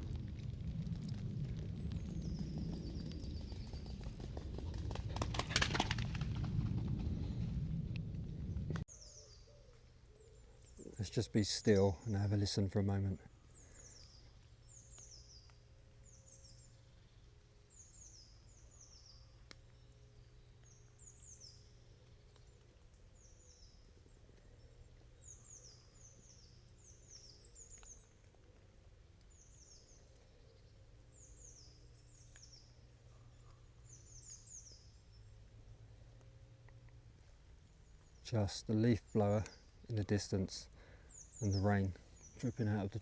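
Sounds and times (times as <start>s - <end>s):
rain dripping from trees: 0.0s - 8.9s, 31.0s - 43.0s
small birds calling: 13.3s - 28.6s, 29.2s - 35.4s, 37.5s - 43.0s.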